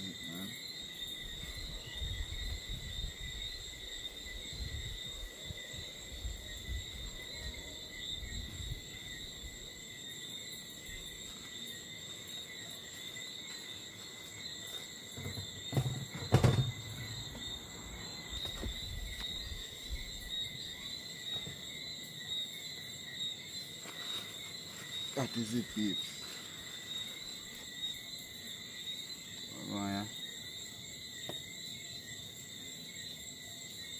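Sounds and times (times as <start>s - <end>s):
crickets trilling: 0.0s - 33.9s
low thump with knock: 15.2s - 17.5s.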